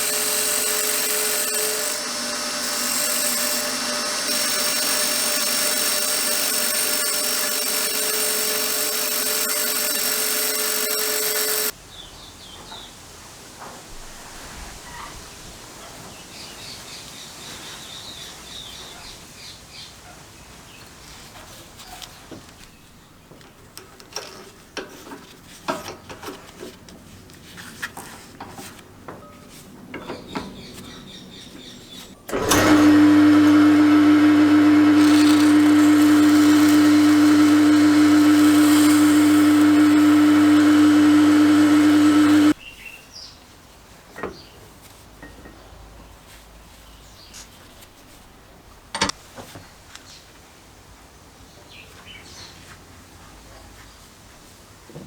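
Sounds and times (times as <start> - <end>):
electric power tool running: 0.0 - 11.8, 32.2 - 42.6
parts clicking and knocking on bench: 49.0 - 49.2.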